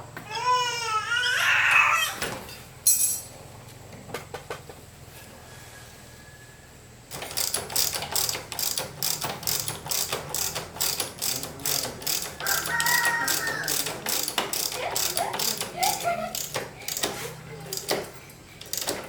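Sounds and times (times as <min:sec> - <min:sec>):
ratchet wrench clicking: 0:07.1 - 0:19.0.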